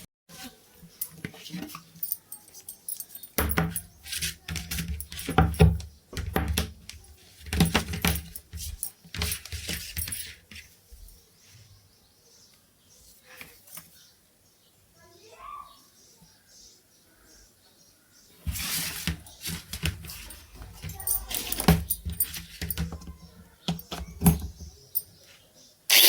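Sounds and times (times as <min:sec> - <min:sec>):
metal objects clinking and rattling: 0:00.9 - 0:05.8, 0:19.4 - 0:25.1.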